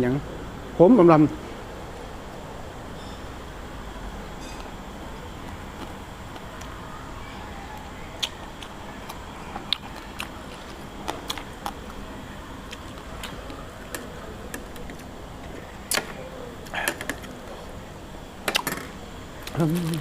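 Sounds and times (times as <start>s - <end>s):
low background hum: 0.0s - 20.0s
chewing: 7.8s - 12.0s, 12.6s - 14.1s, 19.4s - 20.0s.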